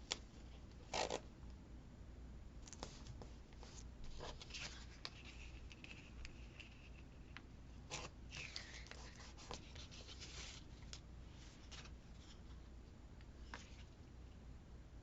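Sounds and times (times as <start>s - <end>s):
paper rustling: 2.7s - 7.0s.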